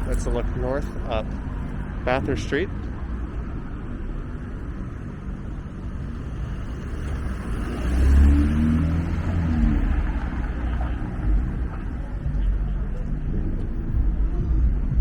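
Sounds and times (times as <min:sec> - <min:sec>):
city street traffic: 0:00.0 - 0:15.0
vehicle passing close: 0:05.7 - 0:12.3.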